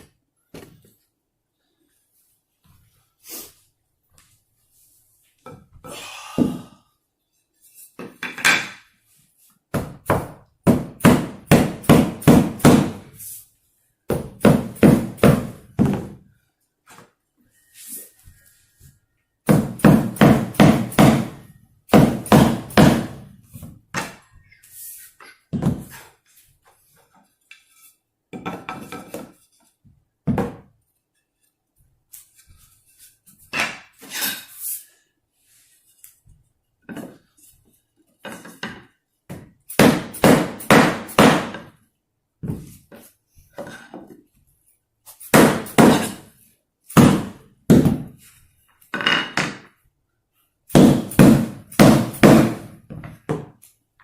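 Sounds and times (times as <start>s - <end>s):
hammer knocking floor plank: 14.1s - 16.2s, 19.5s - 23.2s, 50.7s - 53.5s.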